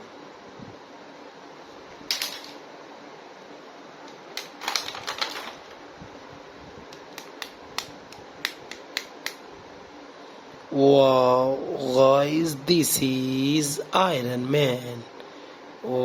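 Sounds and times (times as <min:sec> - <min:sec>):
plastic toy clicks and rattles: 0:04.4 - 0:05.6.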